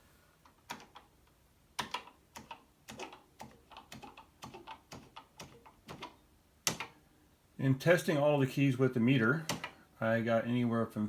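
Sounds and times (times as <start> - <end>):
keyboard keys clicking: 0.6 - 1.1, 1.8 - 7.0.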